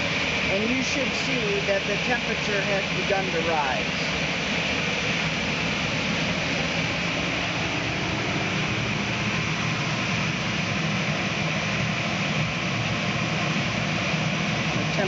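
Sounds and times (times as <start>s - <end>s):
machine blowers whooshing hum: 0.0s - 15.0s.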